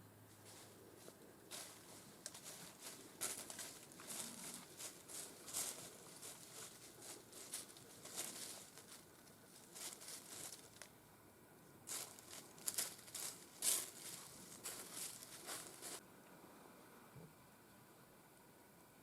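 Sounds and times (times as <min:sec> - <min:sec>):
rustling and crackling: 0:00.3 - 0:11.0, 0:11.9 - 0:16.0.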